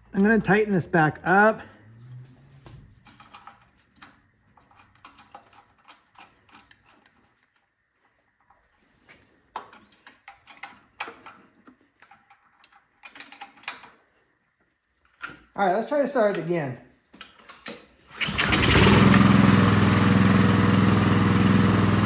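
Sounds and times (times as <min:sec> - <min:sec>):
hand tool clicking and tapping metal: 0:12.0 - 0:14.0, 0:17.2 - 0:17.9.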